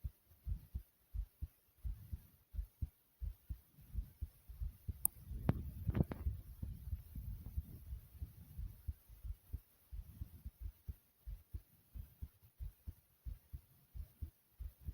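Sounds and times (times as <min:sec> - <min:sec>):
heartbeat thumps: 0:00.0 - 0:14.9
click: 0:05.0 - 0:06.2.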